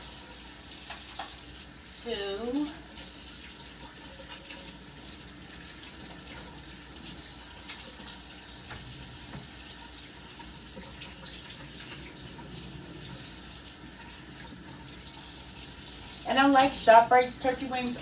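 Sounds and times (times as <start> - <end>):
kitchen tap running: 0.0 - 18.0.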